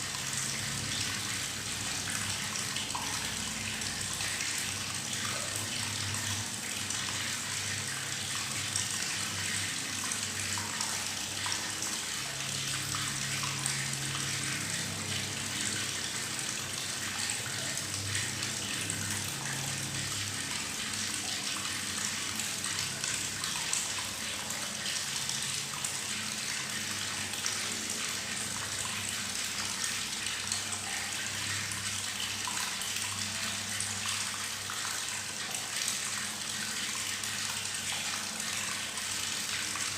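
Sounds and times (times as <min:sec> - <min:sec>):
tap water running into bathtub: 0:00.0 - 0:39.9.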